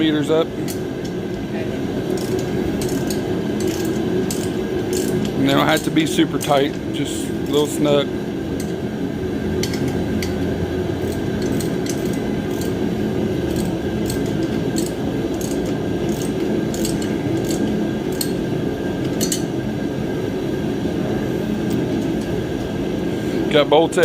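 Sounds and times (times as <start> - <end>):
wrench clicking on bolts: 2.2 - 6.7, 11.0 - 12.8, 13.5 - 18.4.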